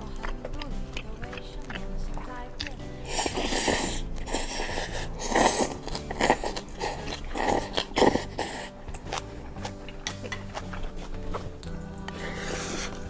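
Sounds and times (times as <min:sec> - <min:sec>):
crunchy bites and chewing: 0:00.0 - 0:13.0.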